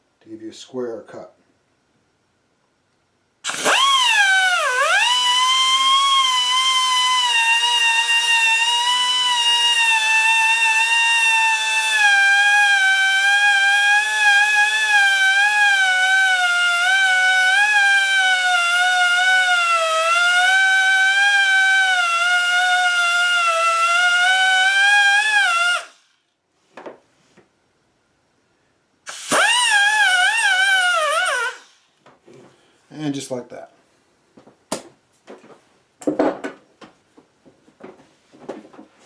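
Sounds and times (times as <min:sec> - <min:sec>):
rotary cutoff tool whining: 0:03.4 - 0:26.1, 0:29.1 - 0:32.0.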